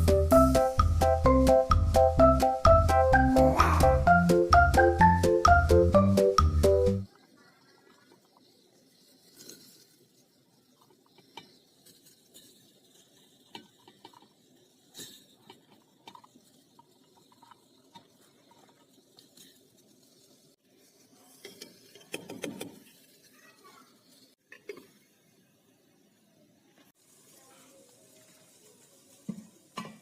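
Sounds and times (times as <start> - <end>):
utensils and cookware clinking: 21.2 - 25.0.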